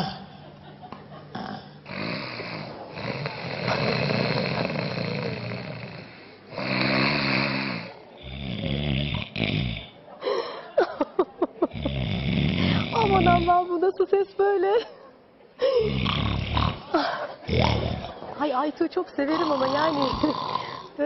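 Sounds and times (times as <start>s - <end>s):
man snoring: 1.4s - 10.0s, 11.7s - 13.5s, 15.8s - 18.2s, 19.3s - 21.0s.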